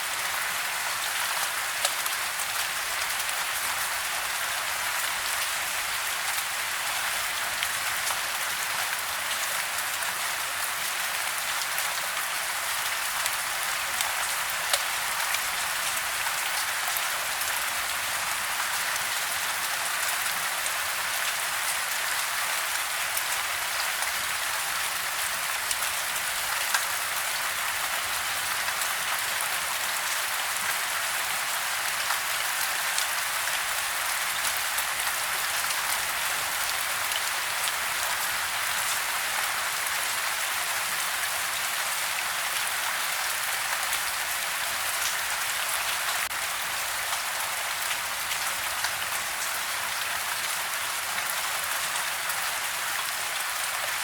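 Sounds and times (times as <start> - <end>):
steady rain falling: 0.0 - 54.0
raindrops ticking on a surface: 1.3 - 3.7, 12.8 - 20.2, 25.0 - 29.6.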